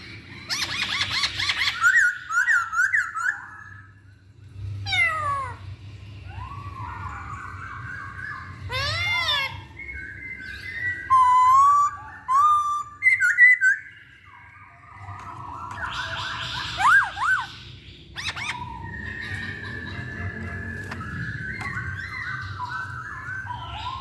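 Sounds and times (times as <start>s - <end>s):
bird singing whistled phrases: 6.2s - 24.0s.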